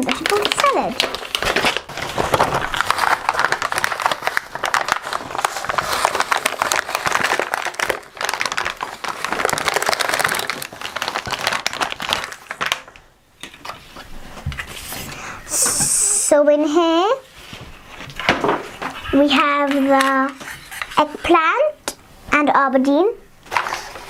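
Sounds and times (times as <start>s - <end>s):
plastic packet crinkling: 0.0s - 13.8s.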